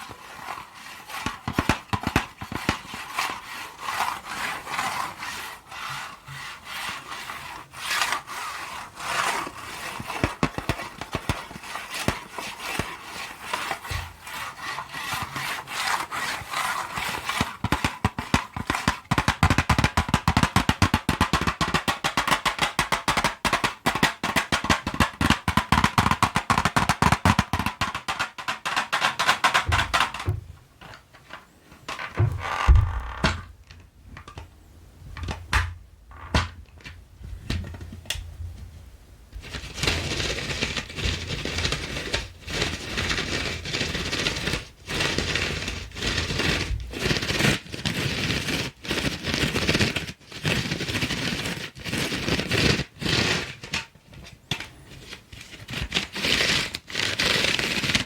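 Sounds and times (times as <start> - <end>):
colored pencils scratching: 0.0 - 23.2, 39.4 - 53.8, 54.9 - 58.0.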